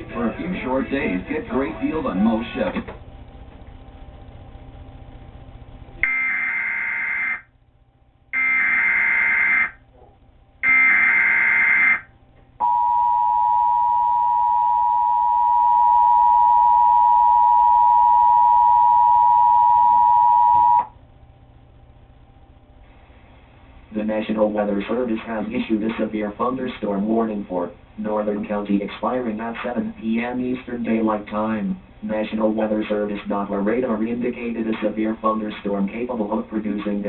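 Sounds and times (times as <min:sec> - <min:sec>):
warbling data tones: 0:06.0 - 0:07.5, 0:08.4 - 0:09.8, 0:10.6 - 0:12.1.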